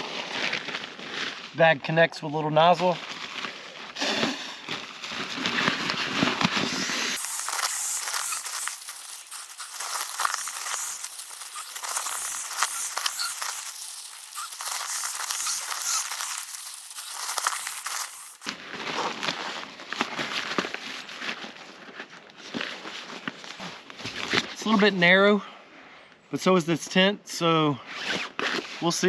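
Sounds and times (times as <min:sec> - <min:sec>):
nylon bag crinkling and rustling: 0:04.7 - 0:18.5
air hissing: 0:06.8 - 0:18.5.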